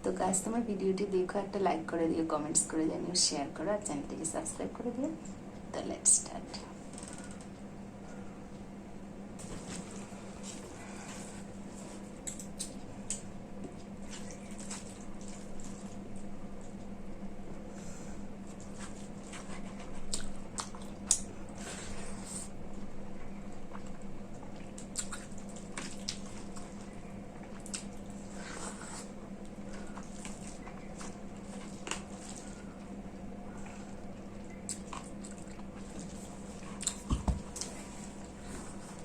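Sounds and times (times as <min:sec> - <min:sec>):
steady low hum: 0:00.0 - 0:39.0
wet squishing of rice and curry: 0:09.4 - 0:17.3, 0:18.3 - 0:39.0
chewing mouthfuls: 0:09.9 - 0:16.8, 0:18.5 - 0:22.9, 0:23.5 - 0:39.0
mouth smacks and clicks: 0:24.9 - 0:25.3.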